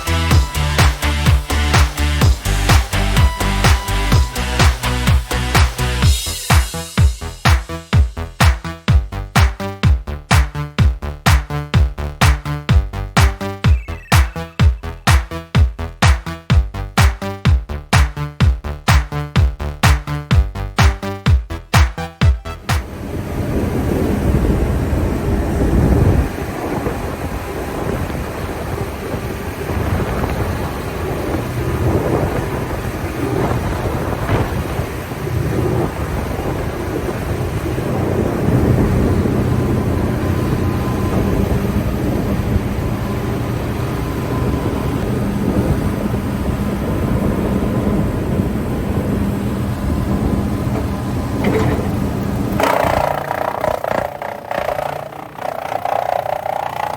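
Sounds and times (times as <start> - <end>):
wood shredder drone: 22.6 - 56.9.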